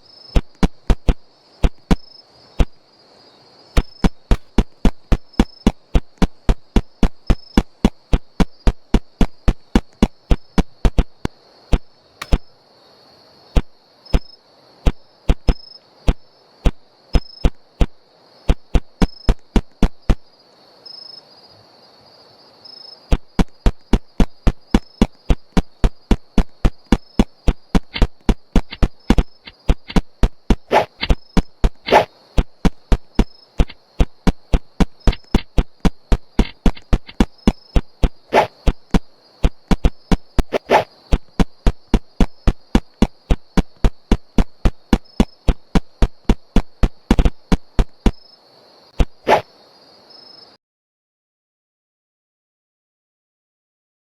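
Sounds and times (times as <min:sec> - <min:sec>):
sharp evenly spaced clicks: 0:00.3 - 0:02.8, 0:03.8 - 0:12.5, 0:13.6 - 0:20.2, 0:23.1 - 0:48.2.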